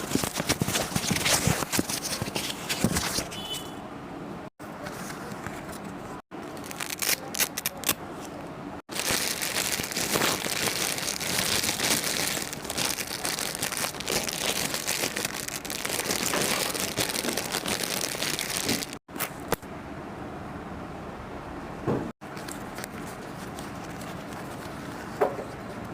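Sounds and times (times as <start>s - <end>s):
plastic packaging crinkling: 0.0s - 3.3s, 6.4s - 8.0s, 8.9s - 19.4s.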